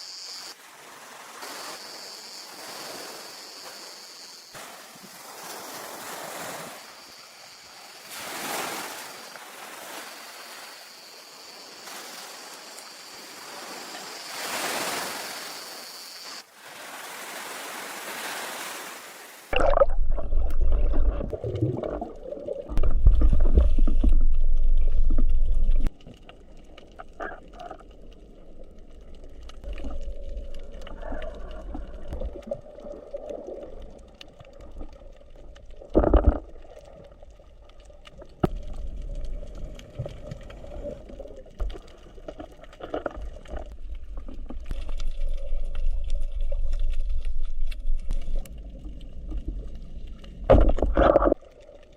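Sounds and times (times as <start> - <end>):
sea waves washing in: 0.1 - 23.4.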